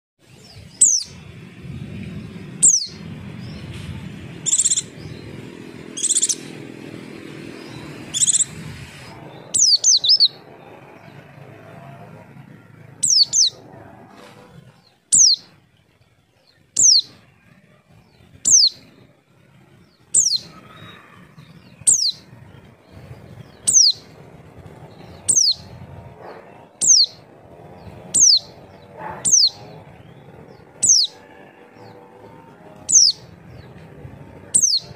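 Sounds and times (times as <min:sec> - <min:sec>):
buzzy bird notes: 0:00.2 - 0:34.9
bird whistles sliding downward: 0:04.4 - 0:04.9, 0:06.0 - 0:06.5, 0:08.1 - 0:10.4, 0:13.0 - 0:13.6, 0:20.1 - 0:21.2, 0:21.8 - 0:22.2, 0:25.2 - 0:25.7, 0:26.8 - 0:27.2.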